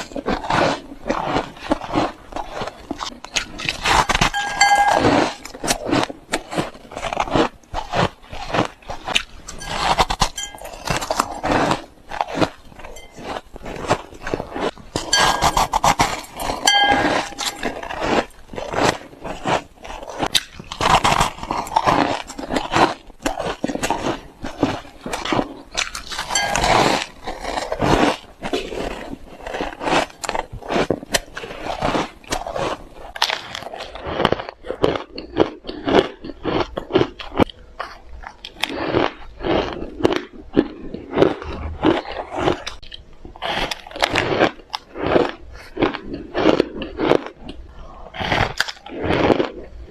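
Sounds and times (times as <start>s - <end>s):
chewing ice: 0.0s - 49.9s.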